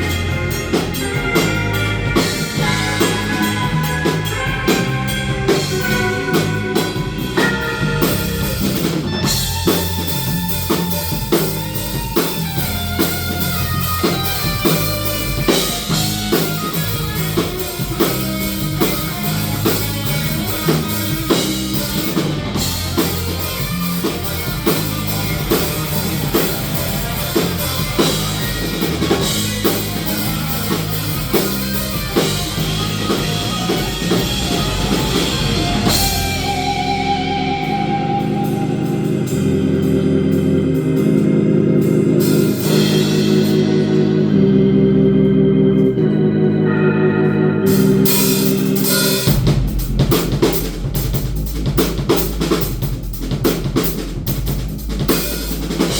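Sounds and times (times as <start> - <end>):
drum kit beat: 0.0 - 45.9, 47.6 - 55.9
organ-like held chords: 0.0 - 55.9.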